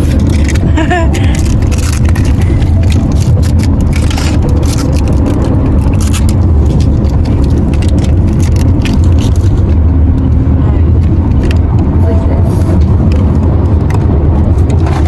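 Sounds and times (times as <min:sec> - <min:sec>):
plastic packaging rustling: 0:00.0 - 0:09.8
car road noise rumble: 0:00.0 - 0:15.0.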